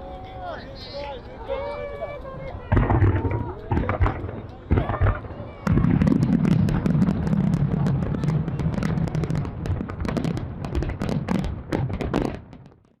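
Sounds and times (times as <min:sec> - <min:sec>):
fireworks crackling: 0:00.8 - 0:13.0
fireworks booming: 0:02.7 - 0:13.0.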